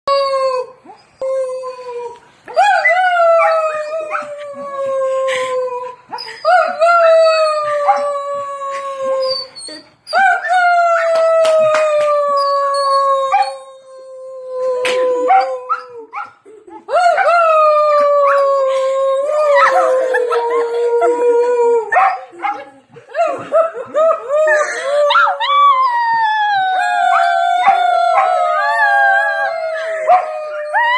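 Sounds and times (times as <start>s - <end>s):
dog howling: 24.0s - 30.9s.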